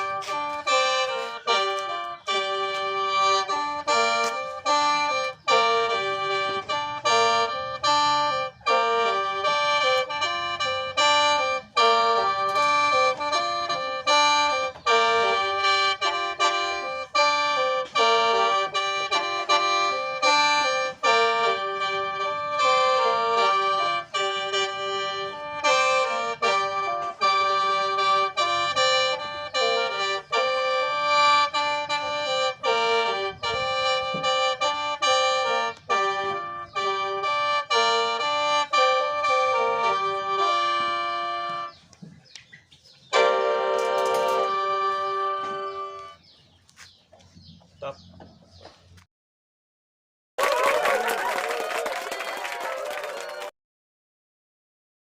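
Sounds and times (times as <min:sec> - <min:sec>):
mouth organ melody with drone: 0:00.0 - 0:48.8.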